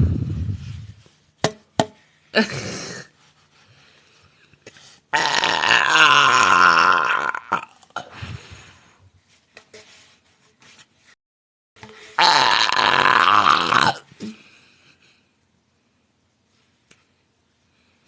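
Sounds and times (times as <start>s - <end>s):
woman belching: 5.2s - 8.1s, 12.2s - 14.1s.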